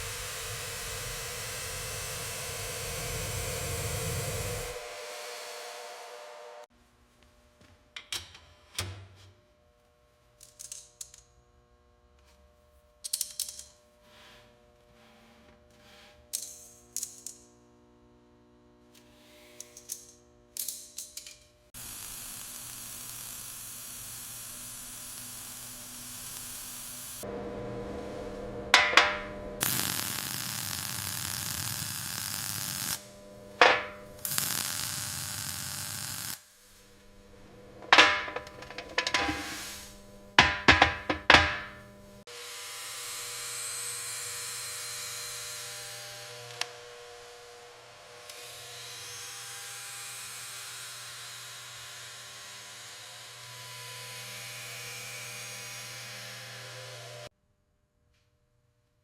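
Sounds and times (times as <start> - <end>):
welding arc sizzling: 0.0 - 6.7, 21.8 - 27.3, 28.0 - 42.2
metallic clangs: 28.8 - 29.4, 33.6 - 34.1, 37.6 - 42.0
metal clicks and clatter: 37.8 - 39.7.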